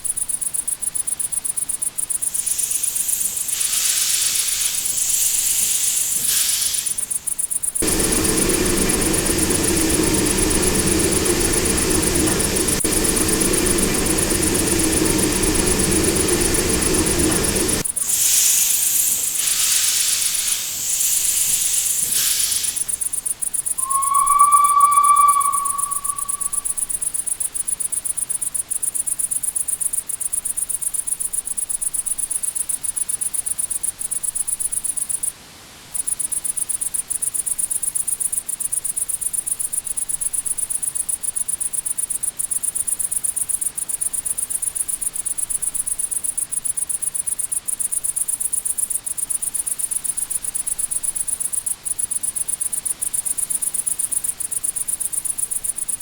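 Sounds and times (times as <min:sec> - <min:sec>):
crickets chirping: 0:00.1 - 0:27.0
steam locomotive whistle: 0:07.8 - 0:23.0, 0:23.8 - 0:26.9.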